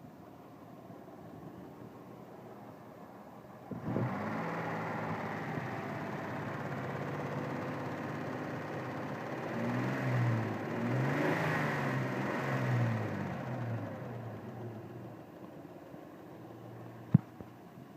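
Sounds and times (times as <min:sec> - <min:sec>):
car engine starting and revving: 0:03.7 - 0:15.1.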